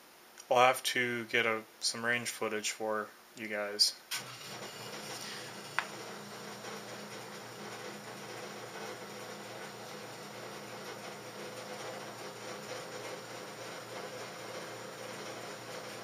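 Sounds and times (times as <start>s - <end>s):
sump pump motor humming: 4.1s - 16.0s.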